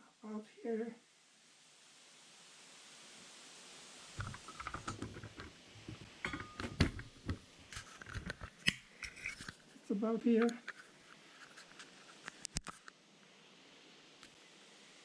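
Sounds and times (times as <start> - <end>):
faint hiss: 0.0 - 15.0
tools and metal parts clicking: 6.2 - 6.8.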